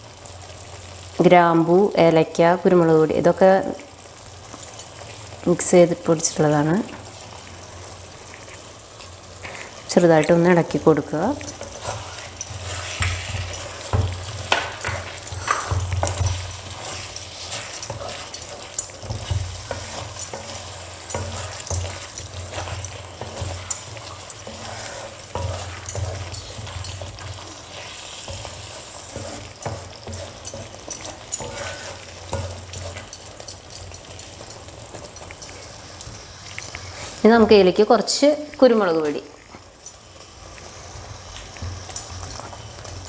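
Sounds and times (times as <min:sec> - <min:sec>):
low sizzle of simmering sauce: 0:00.0 - 0:37.8, 0:38.6 - 0:43.0
utensil clicking against pan: 0:11.2 - 0:36.9, 0:41.3 - 0:43.0
spoon stirring thick curry: 0:11.3 - 0:37.2.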